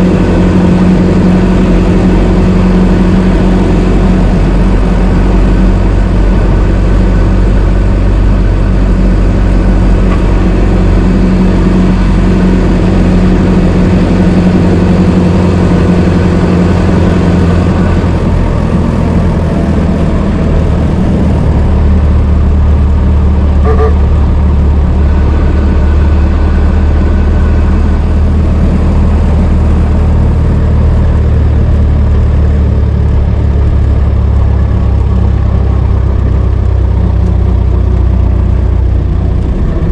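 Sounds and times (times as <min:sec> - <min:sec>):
old car engine running: 0:00.0 - 0:39.9.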